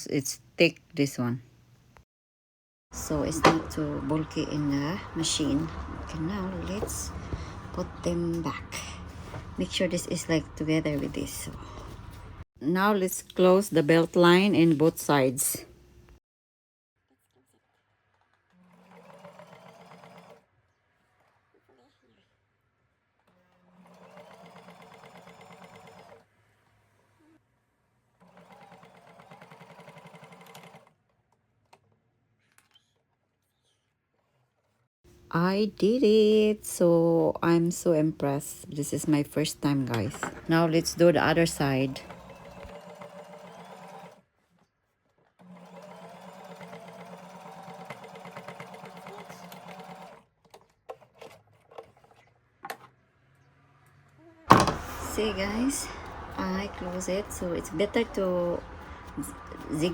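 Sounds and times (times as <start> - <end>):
sewing machine stitching: 3.0 - 12.4, 18.2 - 20.5, 23.3 - 26.4, 28.2 - 31.9, 39.9 - 44.3, 45.2 - 53.0.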